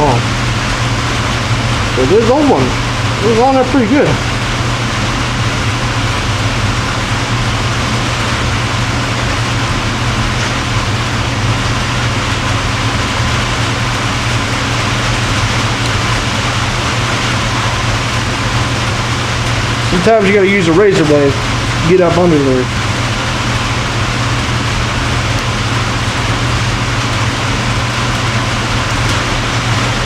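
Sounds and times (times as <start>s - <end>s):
mechanical drone with hum: 0.0s - 30.0s.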